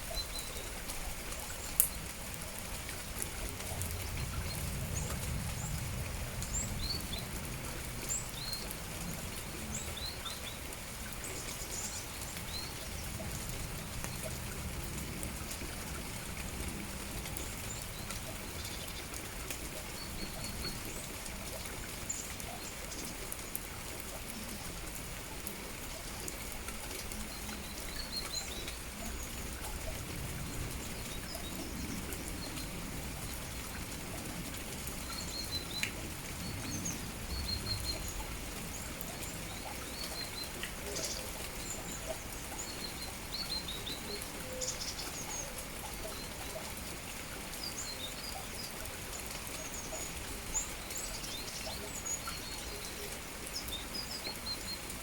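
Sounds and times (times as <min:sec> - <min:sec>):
rain falling: 0:00.0 - 0:55.0
small birds chirping: 0:35.0 - 0:46.8, 0:47.6 - 0:55.0.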